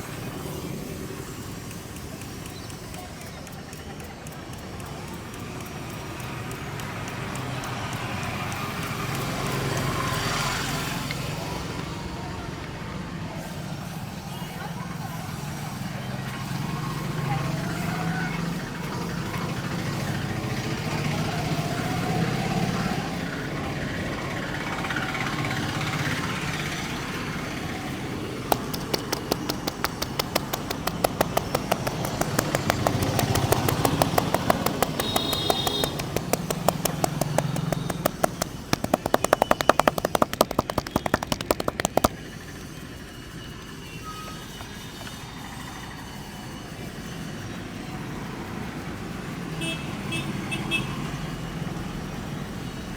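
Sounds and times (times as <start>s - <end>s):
street traffic: 0.0s - 52.9s
hands slapping and tapping: 28.5s - 42.2s.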